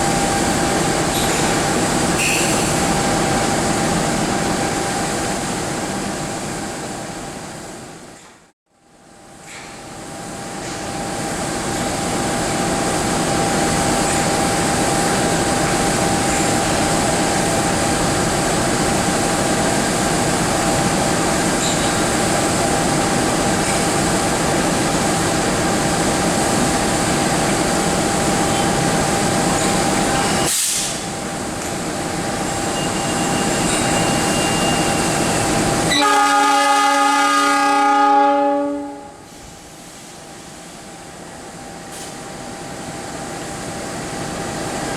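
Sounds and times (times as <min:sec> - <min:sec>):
train rumbling on rails: 0:00.0 - 0:44.9
locomotive horn chord: 0:35.9 - 0:39.2.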